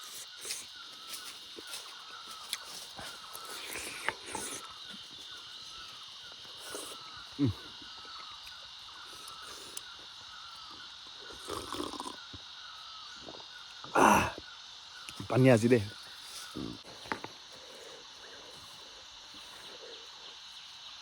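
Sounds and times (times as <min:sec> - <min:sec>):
birds calling: 0:00.0 - 0:21.0.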